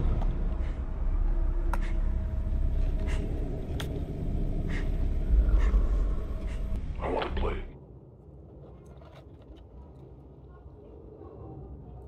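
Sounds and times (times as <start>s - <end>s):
low rumble: 0.0s - 8.6s.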